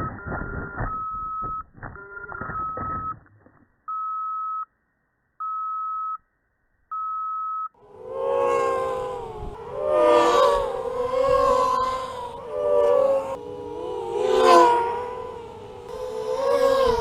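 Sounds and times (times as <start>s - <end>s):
electronic beeper: 0.0s - 3.3s.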